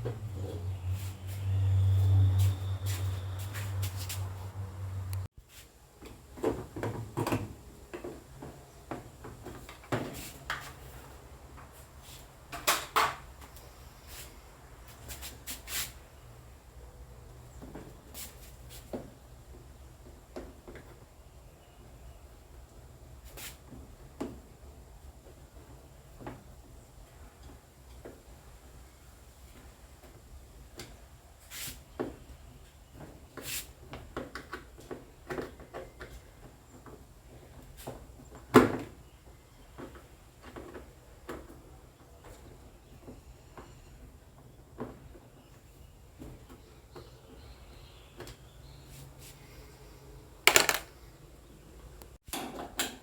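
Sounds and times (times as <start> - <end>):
scraping or rustling: 0.9 - 5.7
knocks and clicks of handling: 50.5 - 50.9.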